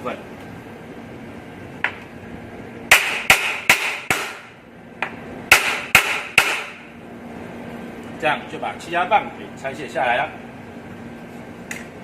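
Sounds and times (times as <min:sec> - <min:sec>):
hammer striking metal: 0:02.9 - 0:04.5, 0:05.5 - 0:06.8.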